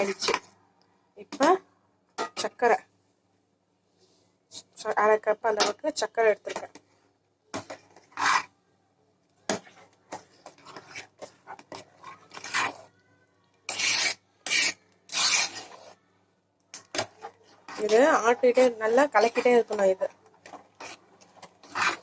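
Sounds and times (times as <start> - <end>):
spoon scraping a cooking pan: 7.6 - 8.6, 9.5 - 12.9, 13.7 - 16.0, 16.8 - 22.0.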